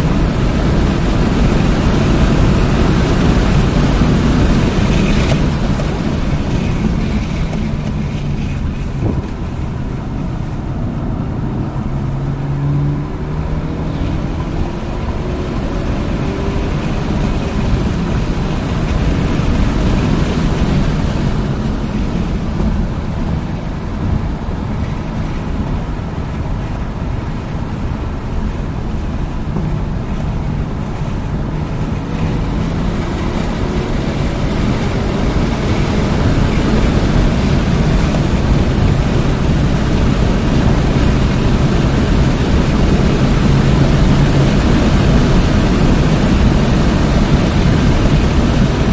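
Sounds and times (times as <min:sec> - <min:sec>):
car engine revving under load: 0:00.0 - 0:48.9
wind and road noise: 0:00.0 - 0:48.9.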